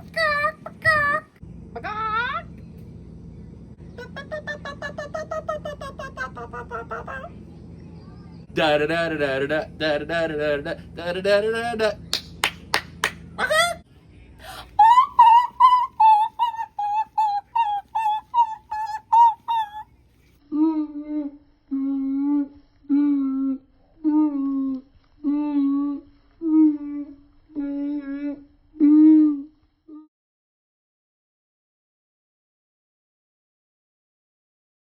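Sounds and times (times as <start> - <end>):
person humming low notes: 20.5 - 30.1
person making clicky vocal sounds: 21.7 - 28.4.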